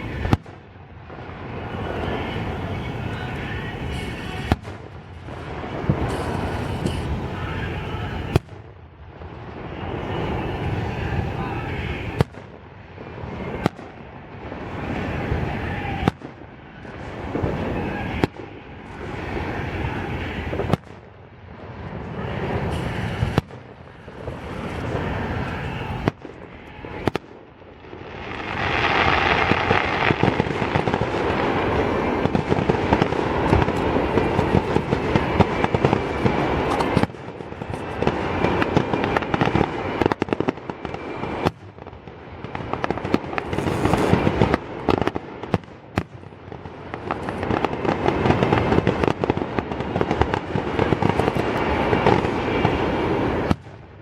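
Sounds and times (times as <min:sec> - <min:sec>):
firework shells booming: 0:00.0 - 0:54.0
fireworks crackling and popping: 0:00.0 - 0:54.0.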